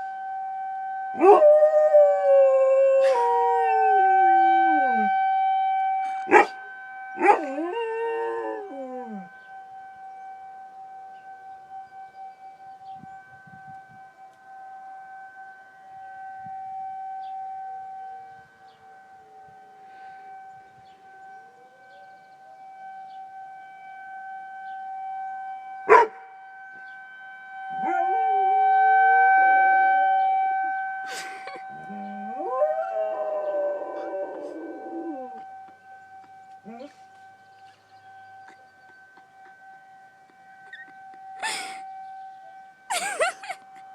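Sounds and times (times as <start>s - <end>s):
tornado siren steady tone: 0.0s - 43.9s
dog howling: 1.2s - 5.1s, 6.3s - 6.6s, 7.2s - 9.3s, 27.8s - 28.6s, 31.1s - 35.8s, 36.6s - 37.0s, 40.6s - 41.8s.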